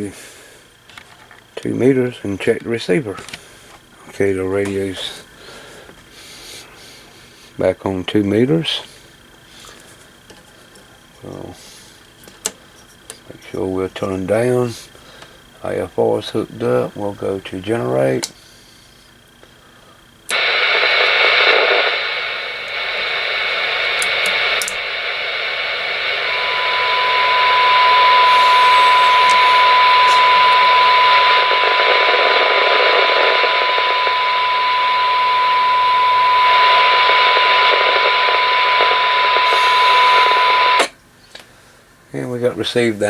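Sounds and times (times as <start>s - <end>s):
radio speaker hissing: 4.3s - 7.8s, 20.3s - 40.9s
steady test tone: 20.3s - 40.9s.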